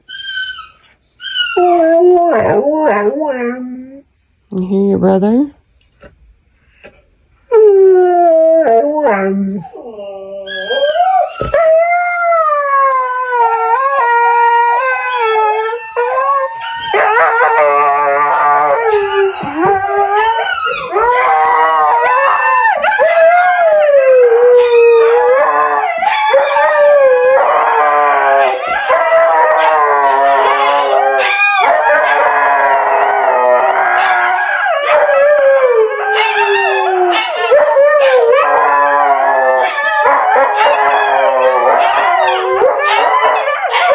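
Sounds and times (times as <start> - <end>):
huskies howling: 7.6 - 43.9.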